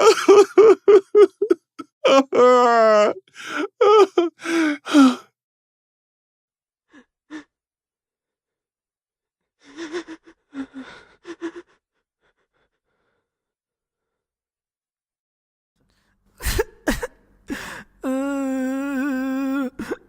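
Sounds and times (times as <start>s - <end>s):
man sobbing: 0.0s - 5.2s, 16.5s - 20.0s.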